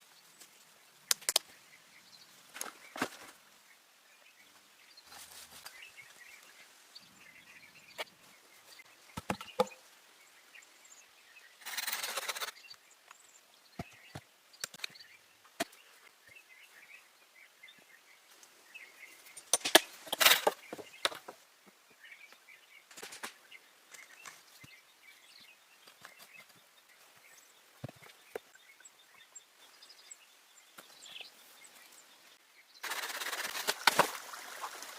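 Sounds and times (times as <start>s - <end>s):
faint birdsong: 0.0s - 34.9s
wood knocking and cracking: 9.2s - 9.8s.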